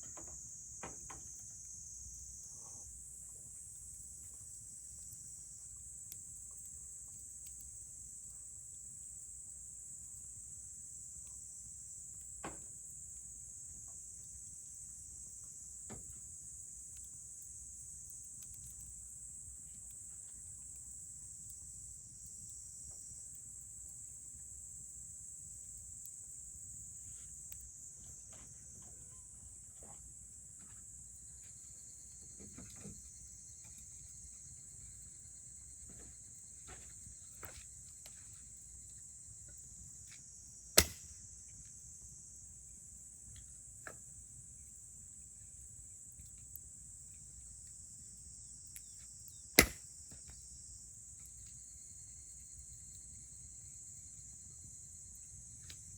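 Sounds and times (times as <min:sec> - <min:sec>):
insects chirring: 0:00.0 - 0:55.9
campfire popping: 0:40.8 - 0:41.2, 0:49.6 - 0:49.9.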